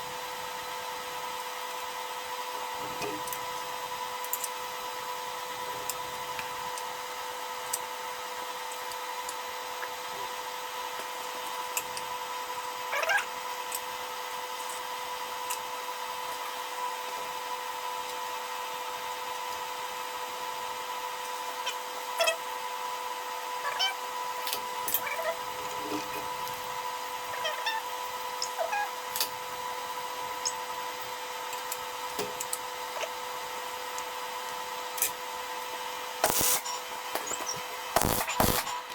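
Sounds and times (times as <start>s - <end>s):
steady two-tone machine hum: 20.1s - 38.9s
short clicks: 36.2s - 38.9s.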